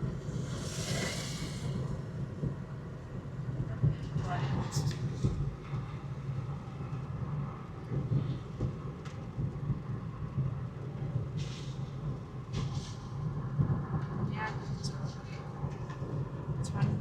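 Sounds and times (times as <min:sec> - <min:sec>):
wet road hiss: 0:00.0 - 0:02.2
engine and tyres rumbling: 0:00.0 - 0:14.1.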